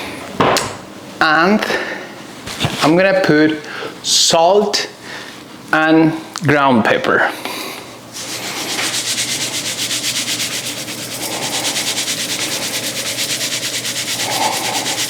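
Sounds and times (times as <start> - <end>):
spice grinder rasping: 8.2 - 15.0.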